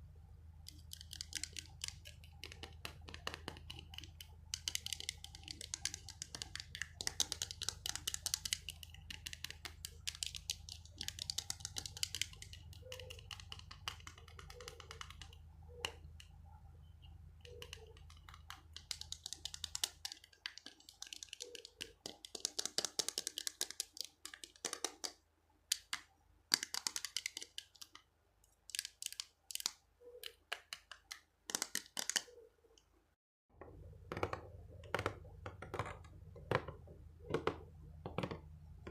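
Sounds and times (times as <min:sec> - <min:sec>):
low steady hum: 0:00.0 - 0:19.4.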